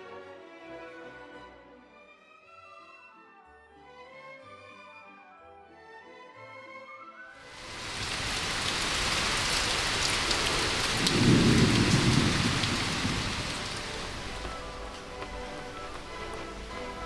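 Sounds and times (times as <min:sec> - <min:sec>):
steady rain: 0:07.4 - 0:17.0
thunder rumble: 0:07.5 - 0:17.0
rain drop ticks: 0:07.6 - 0:17.0.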